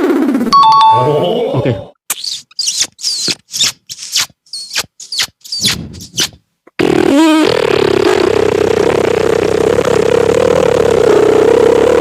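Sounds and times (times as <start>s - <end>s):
motorcycle engine revving: 6.9s - 12.0s.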